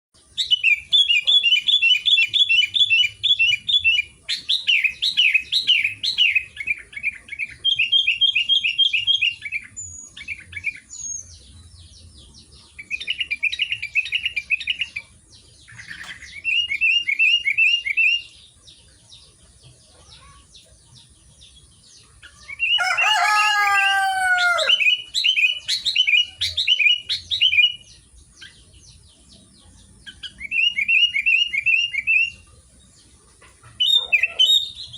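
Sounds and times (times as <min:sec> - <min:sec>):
lower drawn-out bird call: 0:22.5 - 0:27.8.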